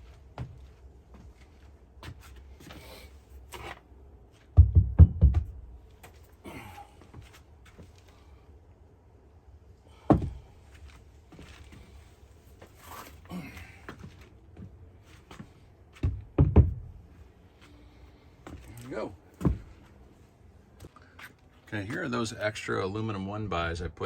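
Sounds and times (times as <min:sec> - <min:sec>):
heavy thuds on wooden boards: 0:04.5 - 0:05.8, 0:10.0 - 0:10.6, 0:15.9 - 0:17.0, 0:19.4 - 0:19.9
sharp knock on wood: 0:04.6 - 0:05.6.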